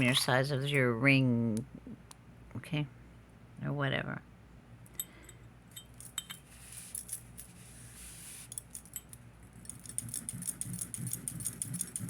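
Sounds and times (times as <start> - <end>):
metal jewelry clinking: 4.9 - 12.0.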